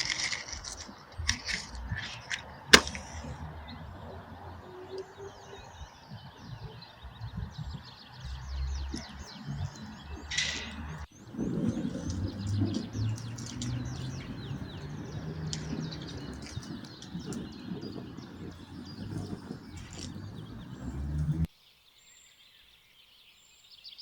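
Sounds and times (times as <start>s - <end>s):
handling noises: 0.0s - 3.4s
low rumbling: 0.0s - 21.5s
songbirds chirping: 0.0s - 24.0s.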